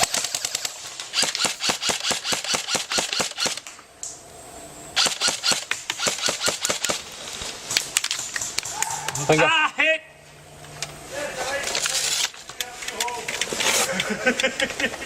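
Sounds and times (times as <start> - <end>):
airsoft rifle rapid fire: 0.0 - 3.7, 5.0 - 7.1.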